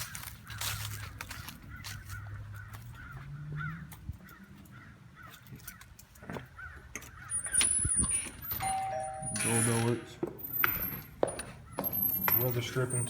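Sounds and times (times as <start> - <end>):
birds calling: 0.0 - 13.0
handling noise: 5.2 - 13.0.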